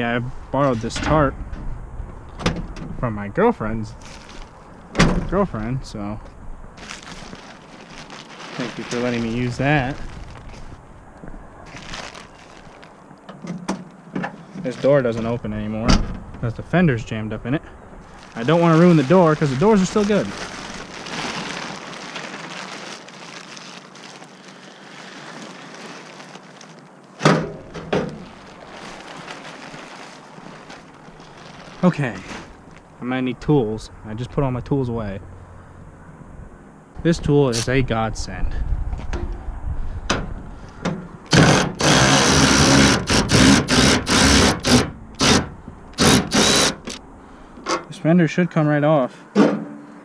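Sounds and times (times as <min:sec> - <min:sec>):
power drill bursts: 0:41.3 - 0:47.0.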